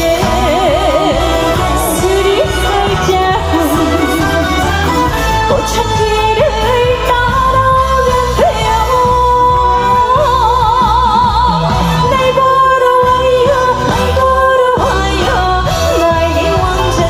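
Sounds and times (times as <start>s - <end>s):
amplified backing track with bass beat: 0.0s - 17.0s
woman singing: 0.0s - 17.0s.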